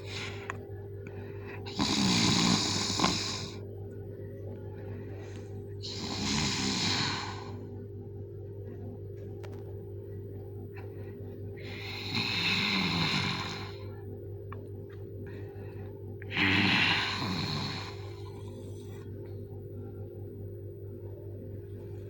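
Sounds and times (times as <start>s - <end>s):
low hum: 0.0s - 22.0s
man snoring: 1.6s - 3.6s, 5.8s - 7.6s, 11.6s - 13.8s, 16.3s - 18.7s.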